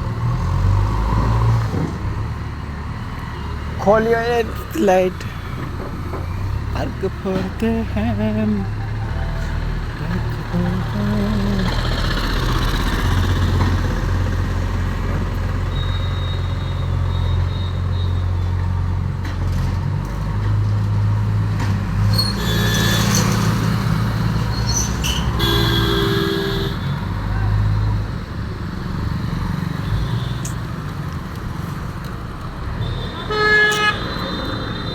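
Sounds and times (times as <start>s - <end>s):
diesel engine running: 3.8s - 17.3s
short horn toots: 32.9s - 34.4s.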